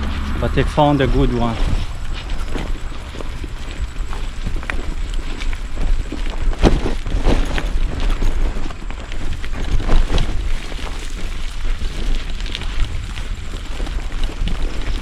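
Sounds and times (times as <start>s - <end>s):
knocks and crackles: 0.0s - 15.0s
loud rumbling on microphone: 0.0s - 15.0s.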